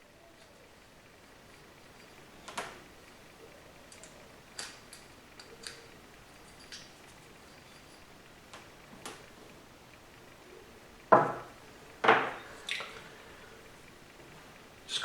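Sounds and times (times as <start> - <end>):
hard parts clattering on work surface: 11.1 - 12.4.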